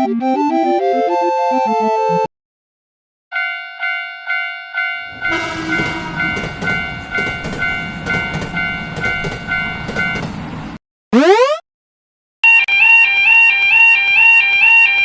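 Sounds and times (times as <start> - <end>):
railroad crossing alarm ringing: 3.4 - 10.2
rail clacks: 5.3 - 10.4.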